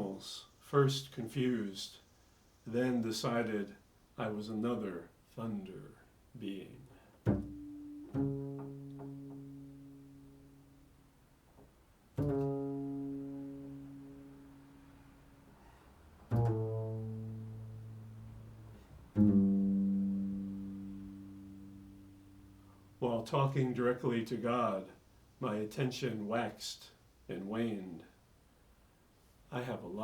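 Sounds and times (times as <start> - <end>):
low ringing instrument notes: 7.3 - 11.2, 12.2 - 15.6, 16.2 - 23.0.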